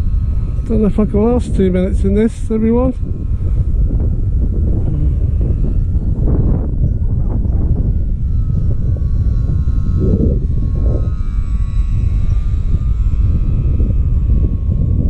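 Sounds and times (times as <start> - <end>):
model glider motor whine: 0.0 - 15.0
wind buffeting microphone: 0.0 - 15.0.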